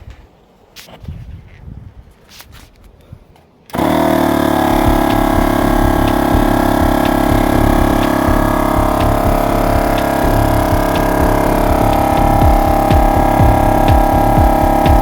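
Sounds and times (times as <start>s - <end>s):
air compressor running: 3.7s - 15.0s.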